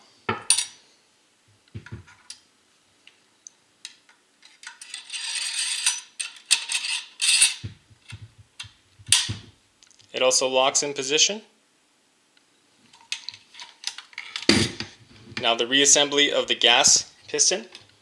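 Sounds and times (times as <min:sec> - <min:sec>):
metal rod scraping slide: 0:04.7 - 0:07.6.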